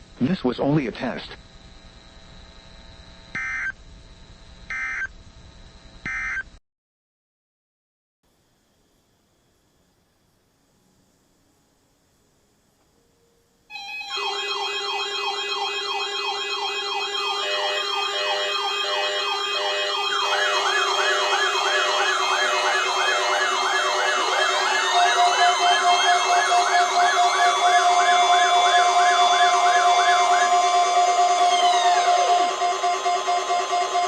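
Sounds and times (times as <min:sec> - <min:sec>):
electronic sirens wailing and warbling: 0:03.4 - 0:03.8, 0:04.7 - 0:05.1, 0:06.1 - 0:06.4, 0:13.7 - 0:34.0
steady tones: 0:16.8 - 0:34.0.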